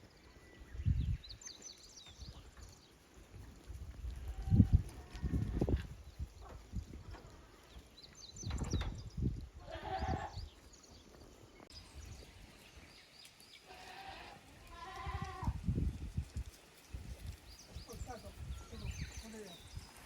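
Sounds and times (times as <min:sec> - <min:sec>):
wind rumble on microphone: 0:00.4 - 0:13.0, 0:14.7 - 0:20.0
goat bleating: 0:09.6 - 0:10.4, 0:13.7 - 0:15.6.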